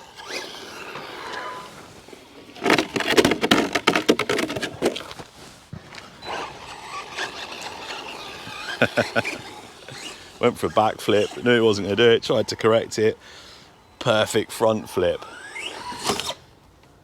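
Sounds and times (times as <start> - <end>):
toy truck rolling on concrete: 0.0 - 13.2, 14.1 - 16.4
toy truck clattering on concrete: 2.3 - 5.2, 6.3 - 11.4.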